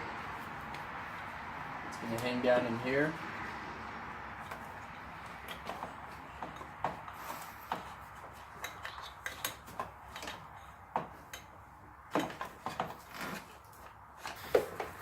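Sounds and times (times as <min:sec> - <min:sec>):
hose fittings clicking and knocking: 0:04.4 - 0:15.0.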